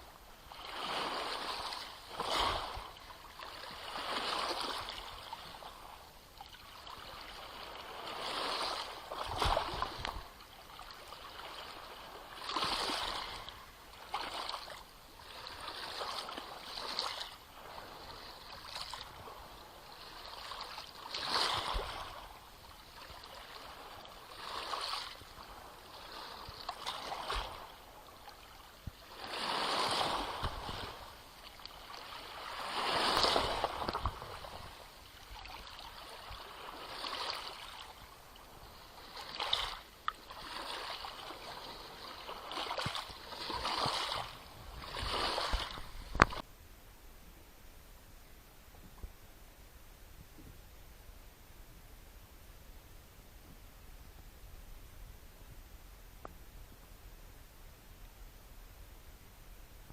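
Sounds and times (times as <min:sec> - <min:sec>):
waves lapping at shore: 0:00.0 - 0:46.5.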